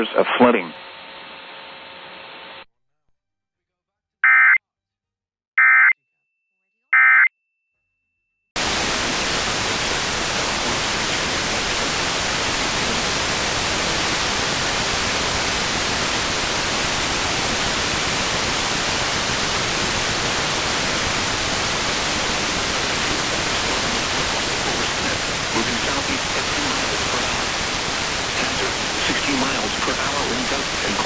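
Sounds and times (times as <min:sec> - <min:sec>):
alert speech: 0:00.0 - 0:00.7, 0:23.1 - 0:27.5, 0:28.4 - 0:31.0
static hiss: 0:08.6 - 0:31.0.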